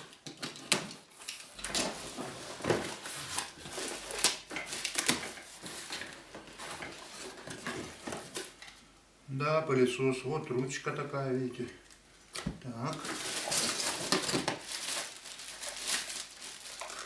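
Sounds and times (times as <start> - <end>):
cardboard packaging rustling: 0.0 - 8.7, 12.8 - 17.0.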